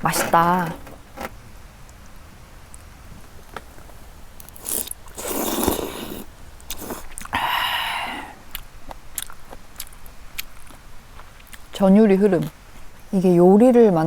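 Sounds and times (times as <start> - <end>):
person chewing and slurping: 4.5 - 7.4, 8.1 - 11.6.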